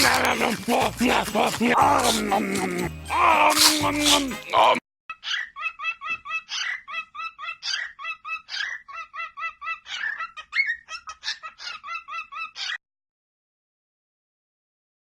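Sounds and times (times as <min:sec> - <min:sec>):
bird calling rapidly: 0:05.1 - 0:12.8.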